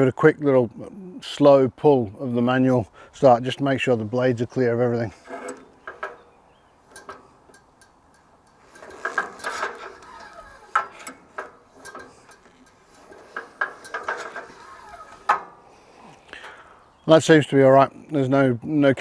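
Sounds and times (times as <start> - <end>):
recoil starter rope rasping: 4.3 - 16.7
metallic clicks and knocks: 5.1 - 16.6.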